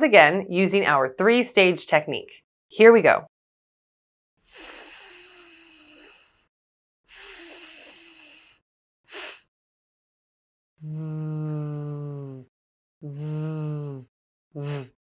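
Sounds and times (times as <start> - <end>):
person making f sound hiss: 4.5 - 6.5, 7.1 - 9.4, 14.6 - 14.9.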